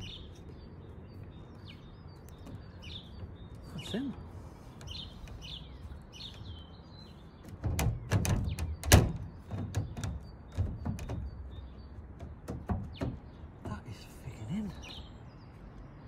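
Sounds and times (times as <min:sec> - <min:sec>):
birds chirping: 0:00.0 - 0:16.0
knocks and thumps on van bodywork: 0:07.4 - 0:13.8.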